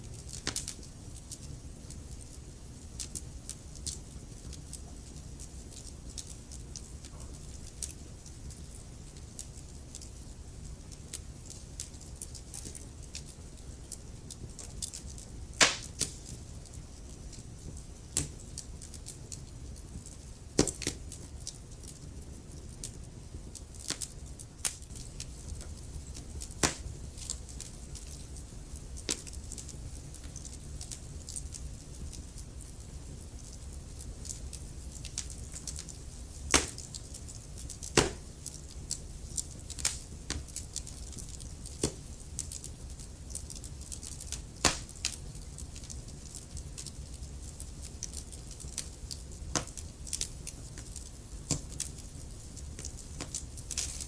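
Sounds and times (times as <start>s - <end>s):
fire crackling and popping: 0.0s - 54.0s
low rumble of flames: 0.0s - 54.0s.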